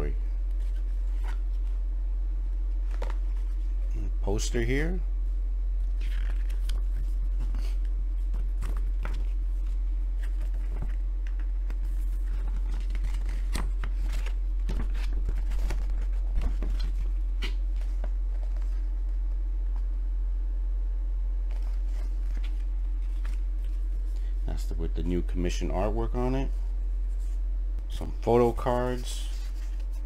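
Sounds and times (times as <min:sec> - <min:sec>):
low electrical hum: 0:00.0 - 0:30.0
paper rustling and crinkling: 0:05.8 - 0:19.1, 0:21.5 - 0:24.2, 0:28.8 - 0:30.0.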